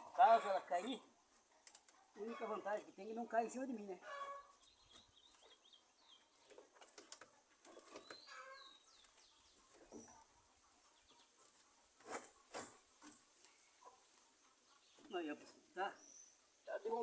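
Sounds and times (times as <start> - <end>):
chicken clucks: 0.0 - 3.2, 3.8 - 15.8
distant bird calls: 4.0 - 10.2.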